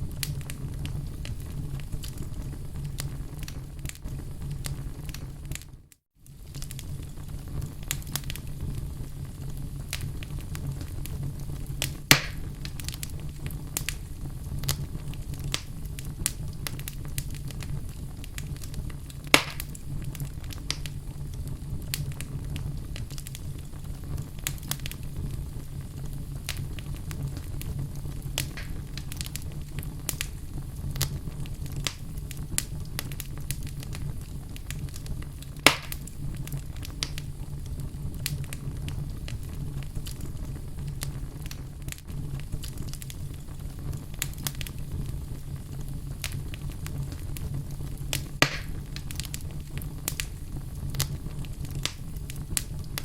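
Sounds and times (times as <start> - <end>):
low rumble of flames: 0.0 - 53.0
small crackles of fire: 0.0 - 53.0
sharp pops of burning wood: 9.8 - 11.2, 11.8 - 21.0, 21.9 - 25.4, 26.4 - 53.0.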